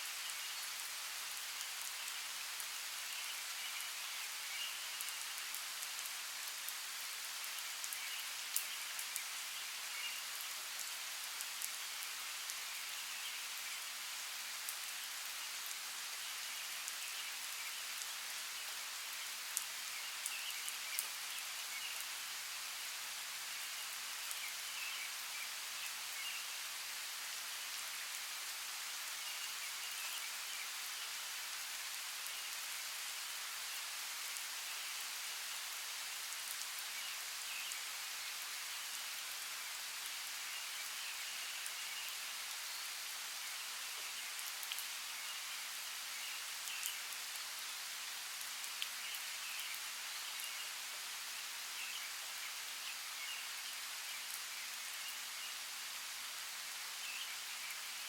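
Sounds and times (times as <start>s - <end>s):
rain on foliage: 0.0s - 58.0s
sharp raindrops striking: 1.6s - 13.8s.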